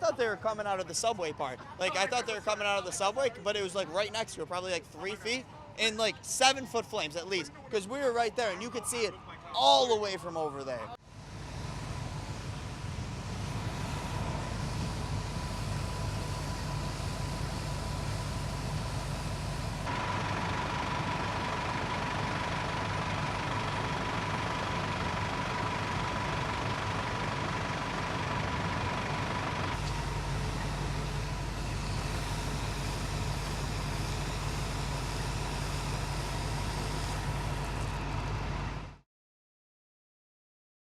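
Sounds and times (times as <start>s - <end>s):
high hum and hiss: 11.0s - 38.4s
truck engines idling: 11.0s - 39.0s.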